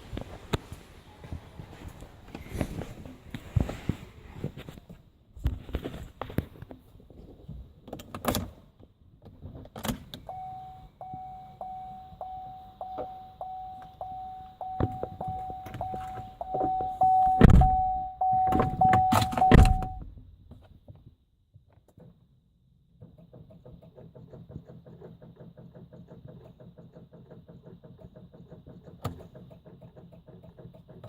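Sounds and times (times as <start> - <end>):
electronic warning tone: 10.3 - 20.0
clunks: 13.8 - 21.0.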